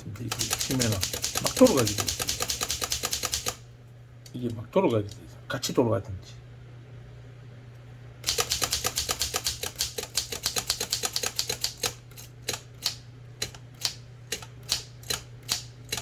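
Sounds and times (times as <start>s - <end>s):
typewriter keys striking: 0.2s - 3.6s, 8.2s - 13.6s.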